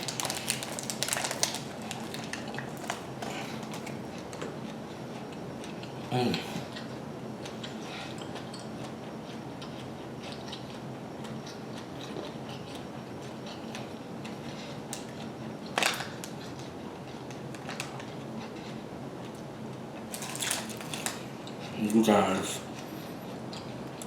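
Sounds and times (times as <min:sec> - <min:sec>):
person chewing and biting: 0:07.4 - 0:14.5.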